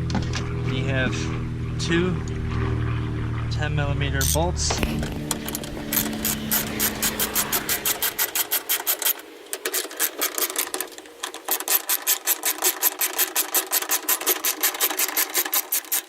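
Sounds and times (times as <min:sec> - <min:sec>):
ratchet wrench clicking: 0:05.4 - 0:16.0.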